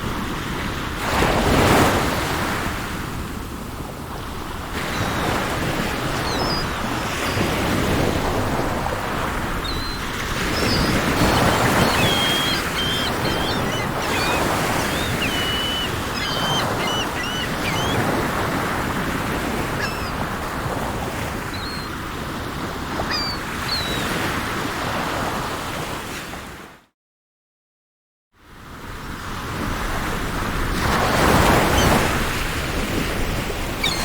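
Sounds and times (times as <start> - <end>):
sea waves washing: 1.1 - 24.4
birds chirping: 4.5 - 22.0, 22.9 - 24.2, 33.7 - 34.0.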